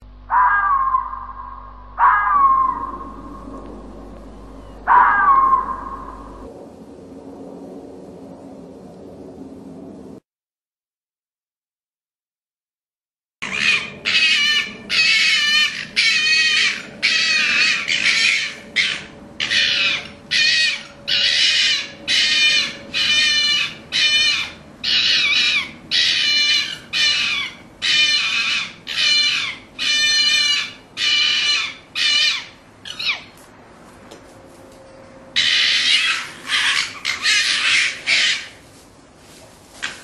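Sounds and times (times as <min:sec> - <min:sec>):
fox calling: 0:00.3 - 0:06.5, 0:13.4 - 0:33.4, 0:35.4 - 0:38.6.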